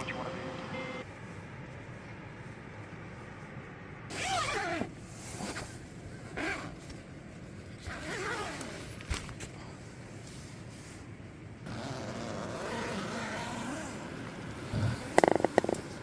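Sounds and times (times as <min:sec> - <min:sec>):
zipper pulled: 0:04.1 - 0:06.9, 0:07.8 - 0:09.4, 0:11.7 - 0:15.9.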